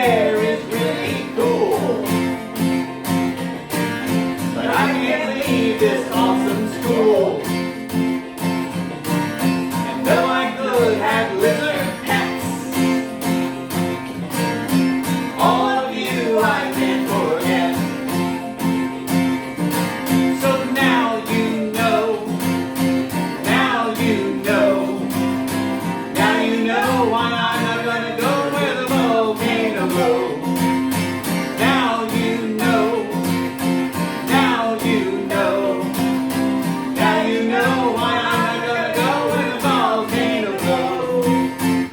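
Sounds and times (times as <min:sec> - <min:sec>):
person singing: 0:00.0 - 0:02.4, 0:04.6 - 0:07.6, 0:10.0 - 0:13.1, 0:15.3 - 0:18.1, 0:20.3 - 0:22.4, 0:26.0 - 0:30.6, 0:31.5 - 0:33.4, 0:34.2 - 0:36.0, 0:36.9 - 0:41.6
strummed acoustic guitar: 0:00.0 - 0:41.9.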